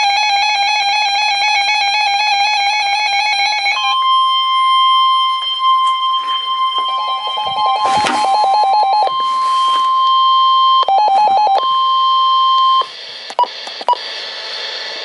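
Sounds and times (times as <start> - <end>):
steady alarm tone: 0.0 - 14.6
warbling electronic alarm beep: 2.5 - 14.0.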